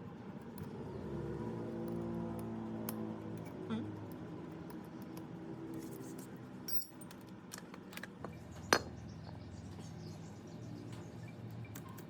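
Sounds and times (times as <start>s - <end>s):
small metal parts clinking: 5.8s - 8.2s.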